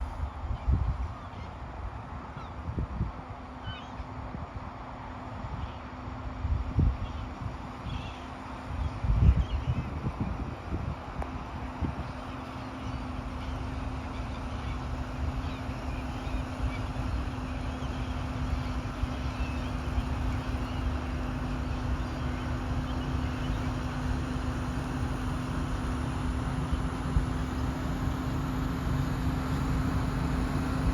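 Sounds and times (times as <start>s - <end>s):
tractor diesel engine under load: 10.4s - 30.9s.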